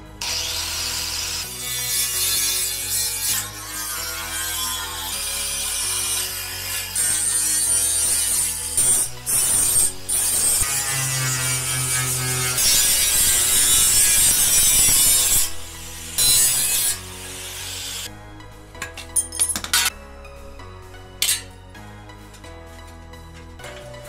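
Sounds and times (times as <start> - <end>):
harsh rasping mechanical noise: 0.0 - 18.2.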